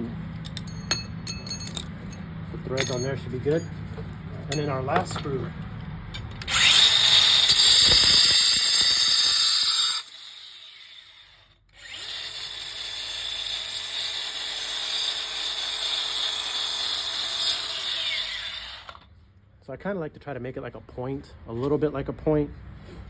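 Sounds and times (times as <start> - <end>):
angle grinder cutting steel: 6.4 - 19.0.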